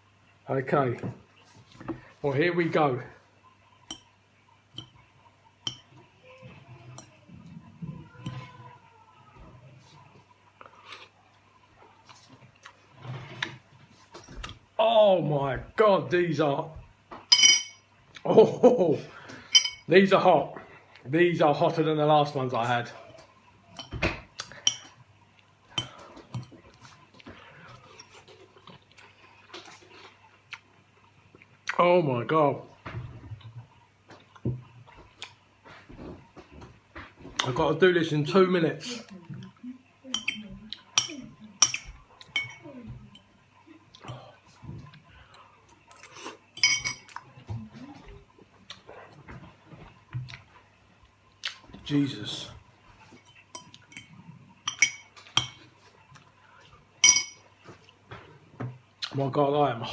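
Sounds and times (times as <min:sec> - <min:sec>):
tableware clinking: 0:05.6 - 0:05.9, 0:17.2 - 0:17.9, 0:19.4 - 0:19.9, 0:23.8 - 0:25.0, 0:40.1 - 0:43.3, 0:46.6 - 0:47.2, 0:53.1 - 0:55.6, 0:57.0 - 0:57.5.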